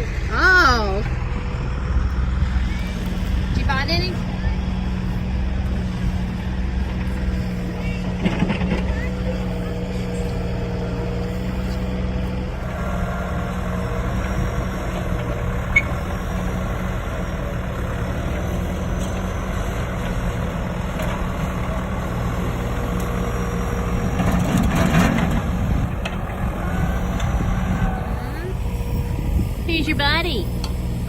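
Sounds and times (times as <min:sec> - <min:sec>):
engine idling: 0:00.0 - 0:31.0.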